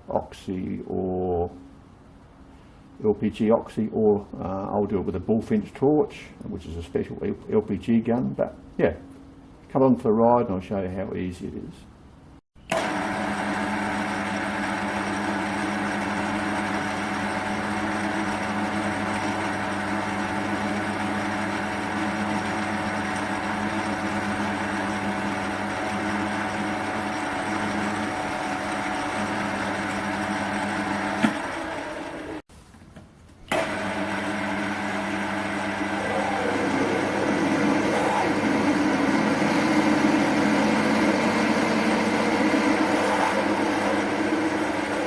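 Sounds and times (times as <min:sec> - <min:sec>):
machine tool motor drilling steel: 0:34.6 - 0:45.0.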